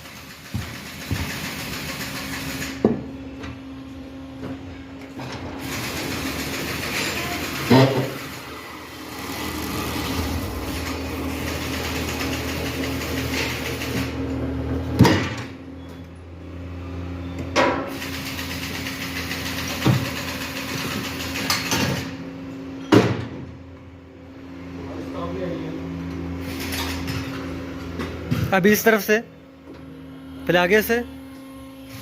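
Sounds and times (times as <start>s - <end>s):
motor hum: 0.0s - 32.0s.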